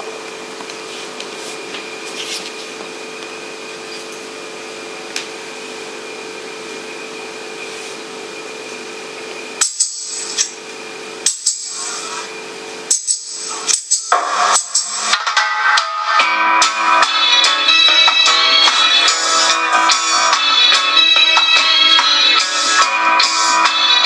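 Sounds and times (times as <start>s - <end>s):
steady two-tone hum: 0.0s - 24.0s
bright percussive hits: 9.6s - 10.6s.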